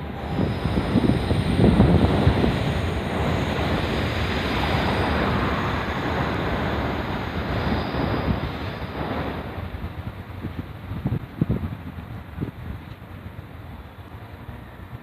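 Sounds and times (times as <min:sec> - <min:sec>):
train rumbling over crossing: 0:00.0 - 0:15.0.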